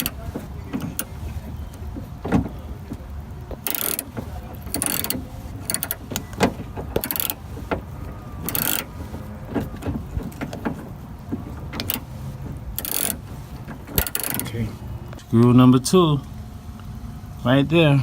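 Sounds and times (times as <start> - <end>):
ratchet clicking: 0.0 - 10.9, 11.7 - 14.6.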